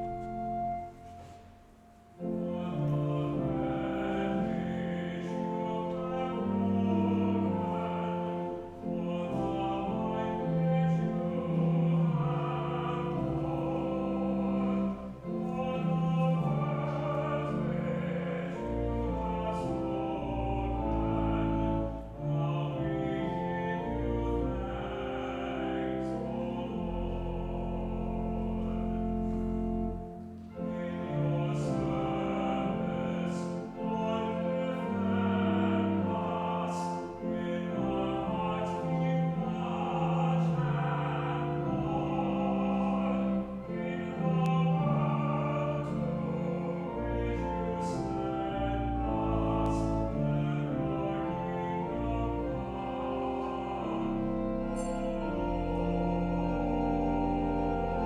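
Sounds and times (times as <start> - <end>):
classical singing voice with vibrato: 0.0 - 58.0.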